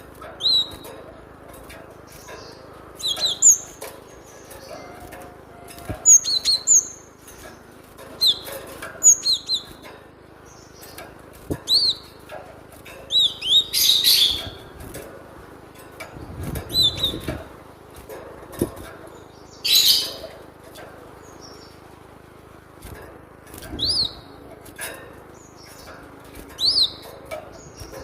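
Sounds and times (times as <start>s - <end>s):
bird chirps: 0.4s - 0.9s, 2.0s - 9.8s, 11.6s - 12.2s, 13.1s - 14.8s, 16.7s - 17.4s, 19.1s - 20.4s, 23.7s - 24.5s, 25.3s - 28.0s.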